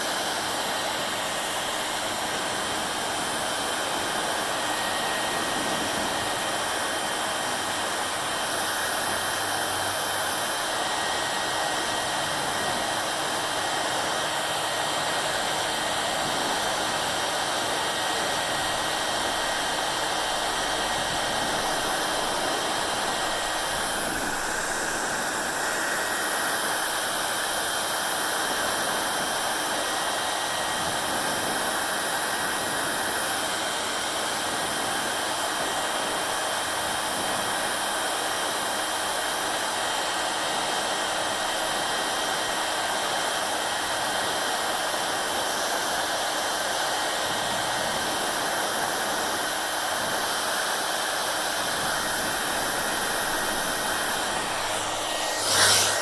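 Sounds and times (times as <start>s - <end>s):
hair dryer blowing: 0.0s - 56.0s.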